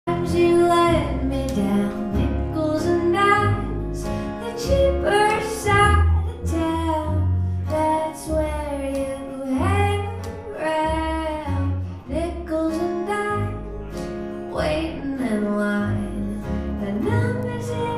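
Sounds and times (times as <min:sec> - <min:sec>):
guitar accompaniment: 0:00.1 - 0:17.9
woman singing: 0:00.1 - 0:17.9.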